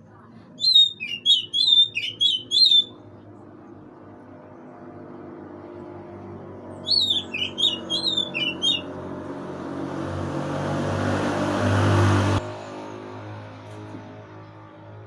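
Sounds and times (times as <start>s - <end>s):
bird sharp chirps: 0.6s - 3.0s, 6.8s - 8.9s.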